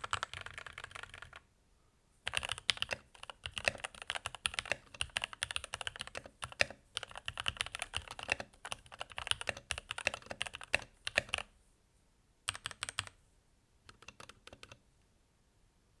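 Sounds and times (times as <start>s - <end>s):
typing on mechanical keyboard: 0.0s - 1.4s, 2.3s - 11.5s, 12.5s - 13.2s, 13.9s - 14.8s.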